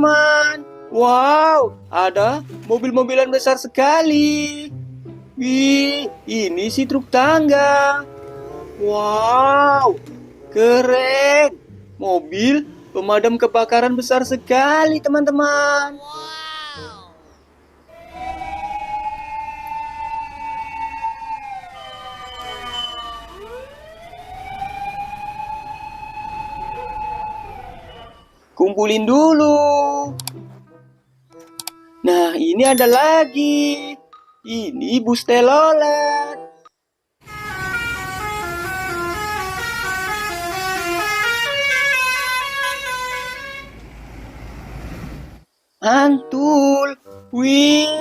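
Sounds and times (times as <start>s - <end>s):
fire engine siren wailing: 17.9s - 28.4s, 37.2s - 43.8s
second siren tone: 17.9s - 28.4s
multi-tone bus horn melody: 21.4s - 23.8s, 37.2s - 43.8s.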